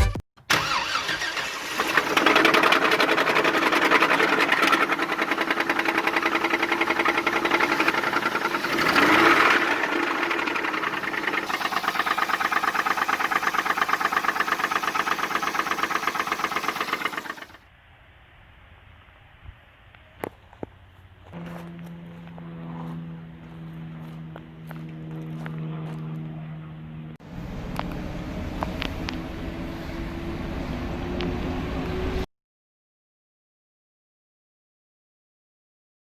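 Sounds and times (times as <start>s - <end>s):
engine running with rod knock: 1.8s - 17.6s, 21.2s - 30.3s.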